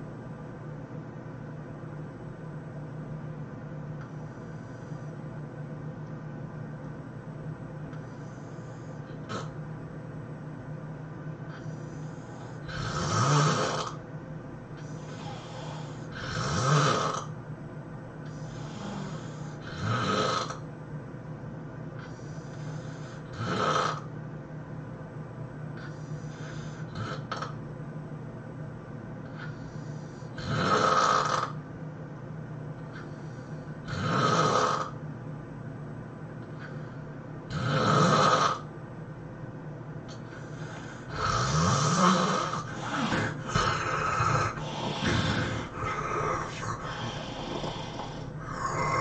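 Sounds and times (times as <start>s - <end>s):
soft breathing: 4.0s - 5.3s, 7.9s - 9.3s, 11.5s - 12.7s, 14.8s - 16.2s, 18.2s - 19.6s, 22.0s - 23.3s, 25.8s - 27.0s, 32.9s - 33.8s, 36.4s - 37.2s, 40.1s - 49.0s
person snoring loudly: 9.2s - 9.6s, 12.3s - 14.0s, 15.0s - 17.3s, 18.4s - 20.6s, 22.8s - 24.1s, 26.4s - 27.6s, 30.3s - 31.6s, 33.8s - 35.0s, 37.5s - 38.7s, 40.4s - 49.0s.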